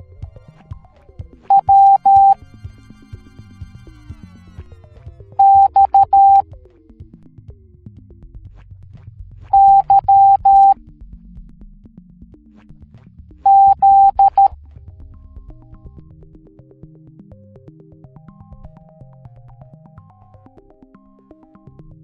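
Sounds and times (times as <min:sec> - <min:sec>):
morse code beeps: 0:01.5 - 0:02.4, 0:05.4 - 0:06.4, 0:09.6 - 0:10.8, 0:13.5 - 0:14.5
soft synthesizer music: 0:01.5 - 0:02.4, 0:05.4 - 0:06.4, 0:09.6 - 0:10.8, 0:13.5 - 0:14.5.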